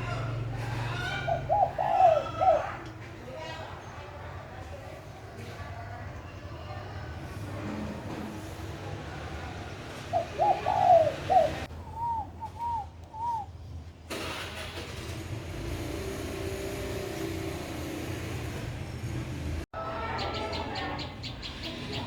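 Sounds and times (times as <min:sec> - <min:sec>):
bird whistling calls: 0:10.2 - 0:13.5.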